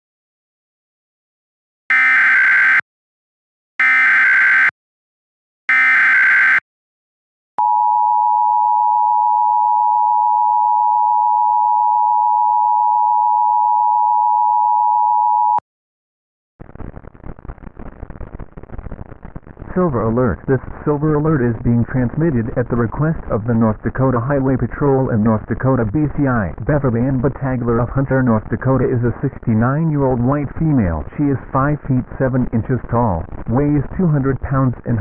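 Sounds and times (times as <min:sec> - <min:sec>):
data burst tones: 0:01.9 - 0:02.8, 0:03.8 - 0:04.7, 0:05.7 - 0:06.6.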